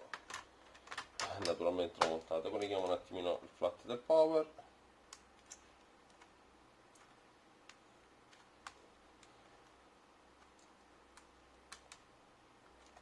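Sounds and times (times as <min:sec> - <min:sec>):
faint clicks and taps: 0:05.1 - 0:13.0.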